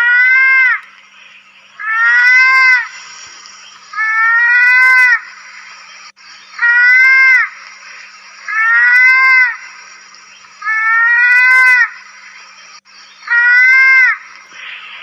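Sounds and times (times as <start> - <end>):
mouse-deer crying: 0.0 - 0.8, 1.8 - 2.9, 4.0 - 5.2, 6.6 - 7.5, 8.5 - 9.6, 10.6 - 11.9, 13.3 - 14.2
steady high hiss: 0.7 - 15.0.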